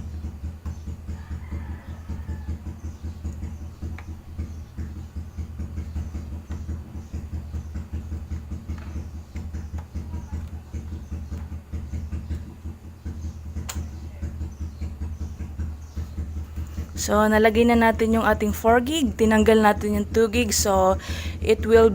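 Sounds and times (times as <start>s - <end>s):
steady low hum: 0.0s - 21.9s.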